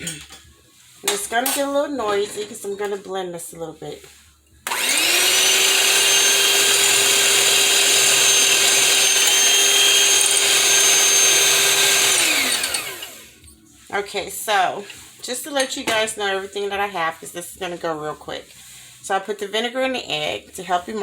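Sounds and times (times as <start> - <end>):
electric blender running: 4.6 - 13.5.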